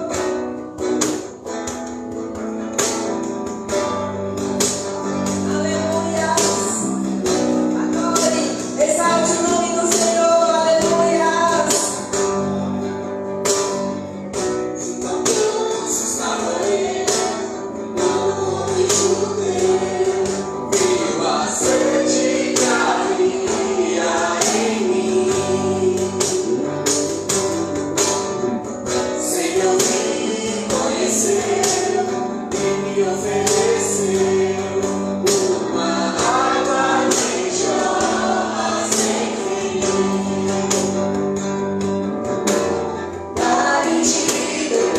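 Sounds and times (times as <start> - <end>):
percussion hits: 0.0 - 44.9
worship band playing: 0.0 - 44.9
person singing: 5.4 - 12.1, 14.8 - 41.1.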